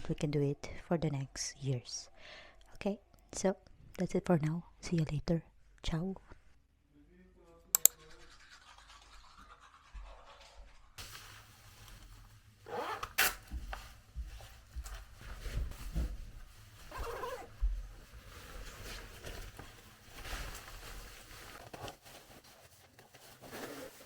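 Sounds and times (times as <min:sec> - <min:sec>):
rustling handling noises: 0:11.0 - 0:24.0.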